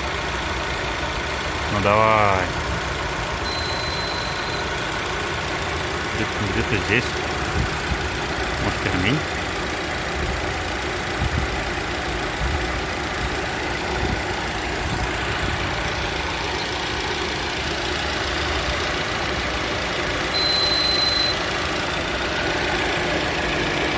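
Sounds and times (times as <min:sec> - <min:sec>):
car engine idling: 0:00.0 - 0:23.9
short high-pitched whistle: 0:03.4 - 0:04.7, 0:20.3 - 0:21.4.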